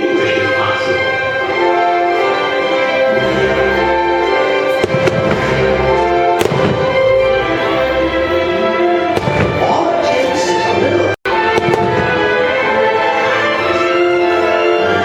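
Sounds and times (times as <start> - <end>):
loud orchestral music: 0.0 - 15.0
fireworks bursting with bangs: 4.7 - 7.4, 9.1 - 9.8, 11.4 - 12.6.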